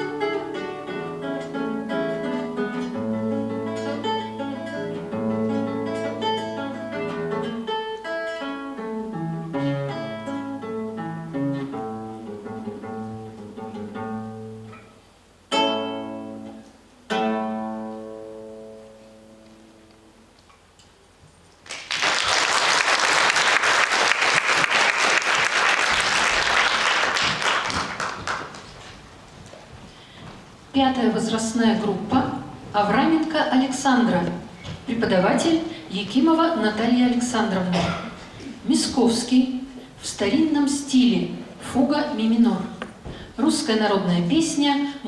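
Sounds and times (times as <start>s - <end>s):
plucked string instrument: 0.0s - 20.9s.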